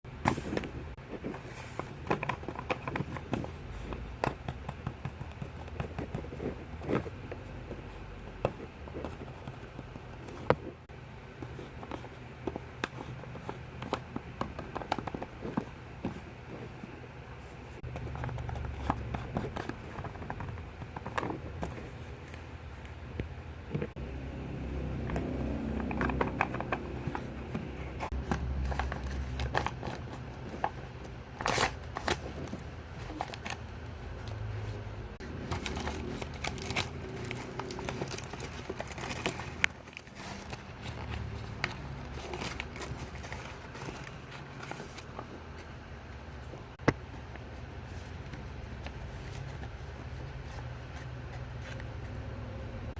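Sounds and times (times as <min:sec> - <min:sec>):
plastic wrapping crinkling: 0:35.2 - 0:45.3.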